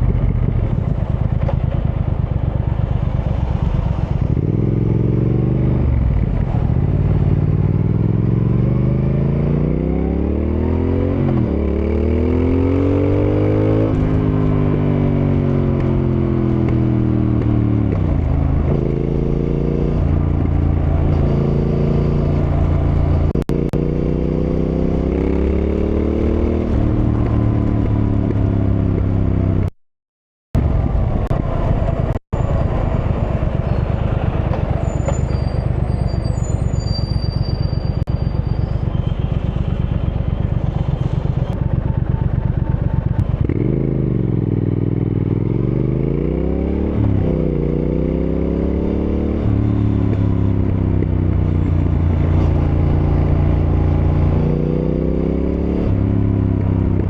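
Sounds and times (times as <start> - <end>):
motorcycle engine shifting gears: 0.0 - 29.7, 30.6 - 57.0.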